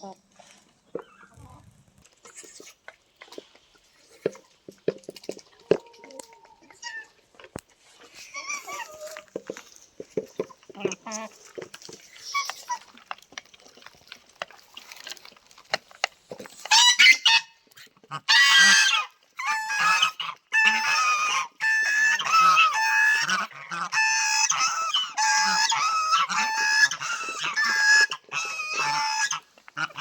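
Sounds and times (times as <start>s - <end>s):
poultry calling loudly: 18.2s - 30.0s.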